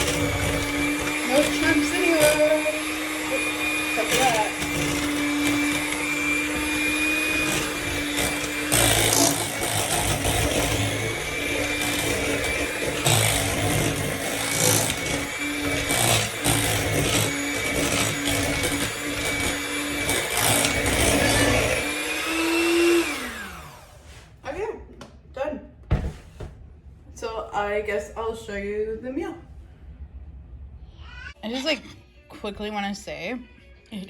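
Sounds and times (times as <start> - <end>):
electric mixer motor hum: 0.0 - 24.0.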